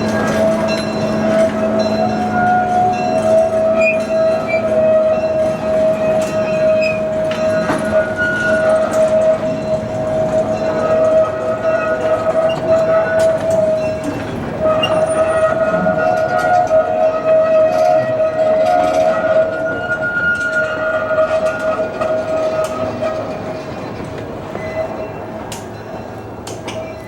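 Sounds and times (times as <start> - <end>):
locomotive whistle blowing: 0.0 - 23.5
train cars clicking: 0.0 - 27.0.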